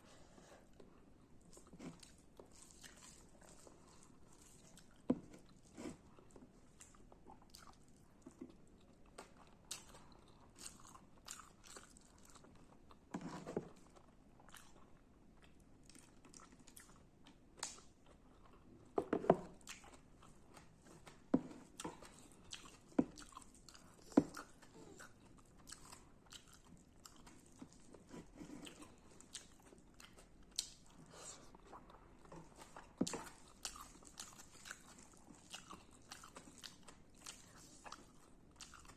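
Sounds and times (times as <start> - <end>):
person crunching and chewing: 9.3 - 13.0, 31.7 - 38.9.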